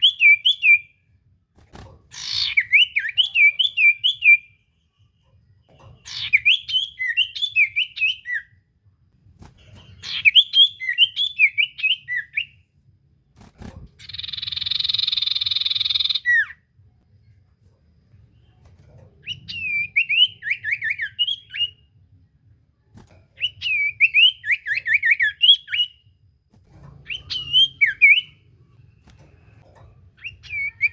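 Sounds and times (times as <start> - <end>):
bird chirpy whistled notes: 6.0 - 8.5, 14.0 - 16.6, 19.3 - 21.9, 23.4 - 26.0, 27.1 - 28.5, 30.2 - 30.9.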